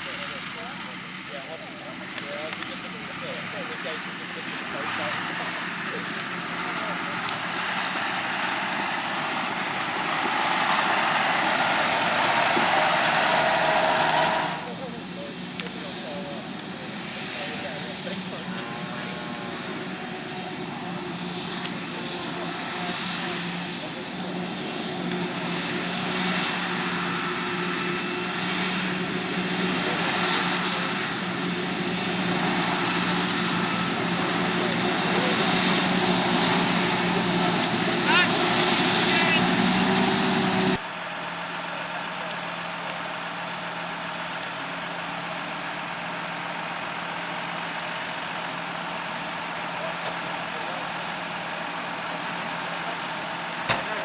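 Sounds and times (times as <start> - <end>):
harvesting machinery running: 0.0 - 54.0
rushing hiss of chopping maize: 3.4 - 14.7, 21.2 - 40.8.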